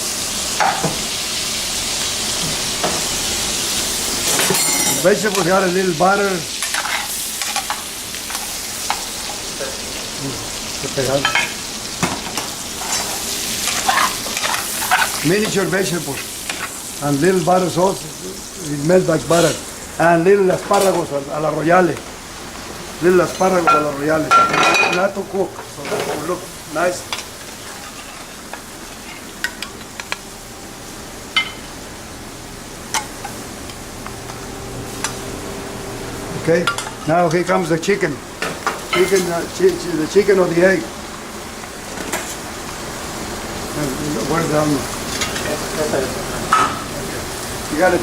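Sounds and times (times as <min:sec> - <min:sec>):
vegetables sizzling in a pan: 0:00.0 - 0:48.0
kitchen utensils clinking: 0:00.6 - 0:01.0, 0:04.2 - 0:09.5, 0:10.9 - 0:16.8, 0:20.4 - 0:21.1, 0:23.1 - 0:26.4, 0:36.5 - 0:37.7, 0:38.4 - 0:40.8, 0:44.2 - 0:47.0.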